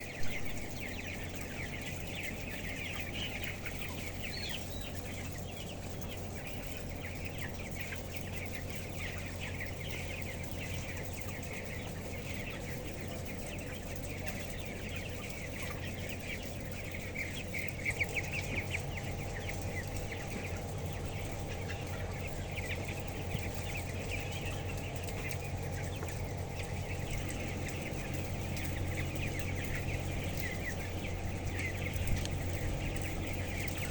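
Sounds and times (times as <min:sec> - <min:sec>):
chickens peeping: 0:00.0 - 0:33.9
steady low hum: 0:00.0 - 0:33.9.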